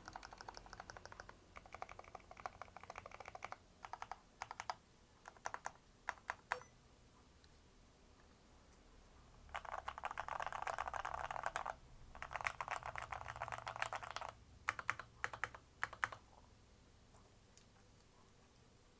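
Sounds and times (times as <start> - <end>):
typing on mechanical keyboard: 0.0 - 6.7, 9.5 - 16.2.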